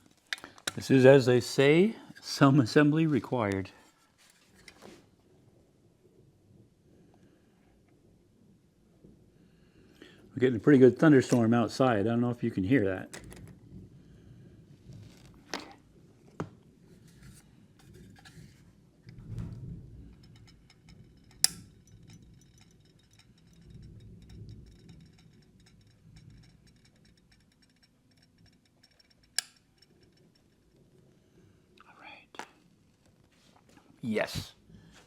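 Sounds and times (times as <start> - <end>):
sharp clicks and knocks: 19.1 - 30.9
distant thunder rumble: 19.2 - 20.3.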